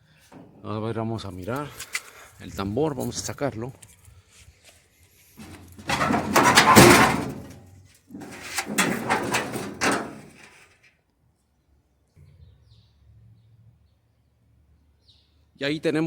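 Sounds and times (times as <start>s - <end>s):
sheet metal drum scraping and rattling: 5.4s - 10.6s.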